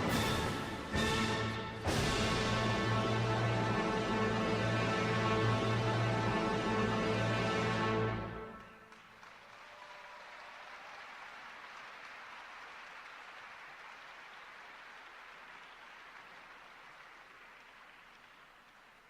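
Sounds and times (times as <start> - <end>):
ice dance program music: 0.0 - 8.6
audience applause: 8.4 - 19.0.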